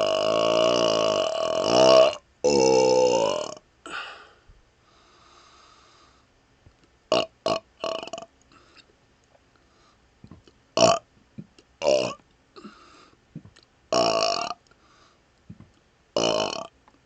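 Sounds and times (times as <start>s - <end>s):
man burping: 0.0s - 4.3s, 7.1s - 8.3s, 10.8s - 11.0s, 11.8s - 12.8s, 13.9s - 14.6s, 16.2s - 16.7s.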